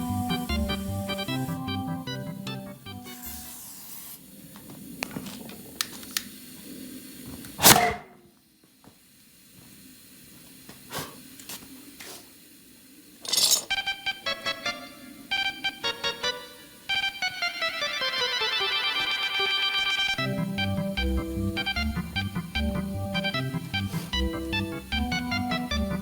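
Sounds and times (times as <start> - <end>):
air hissing: 3.1 - 4.6, 5.3 - 8.2, 21.0 - 25.6.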